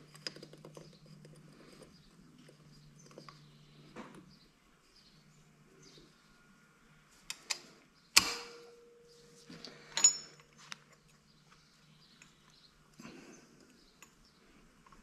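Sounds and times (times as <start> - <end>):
sharp metal clanks: 8.2 - 9.1, 10.0 - 10.4.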